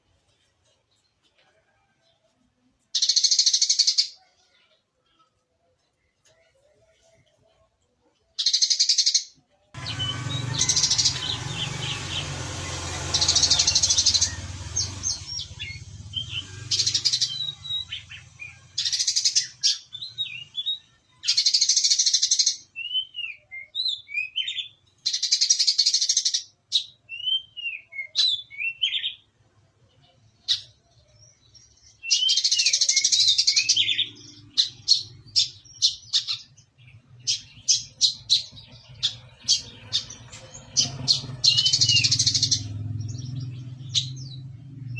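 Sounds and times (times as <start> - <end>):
bird singing buzzy trills: 8.4 - 29.3, 30.0 - 44.9
low rumbling noise: 9.8 - 18.8
bird sharp chirps: 30.4 - 44.9.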